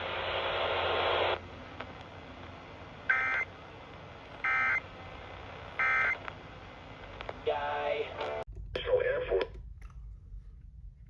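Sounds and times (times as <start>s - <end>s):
faint radio hiss: 0.0s - 9.4s.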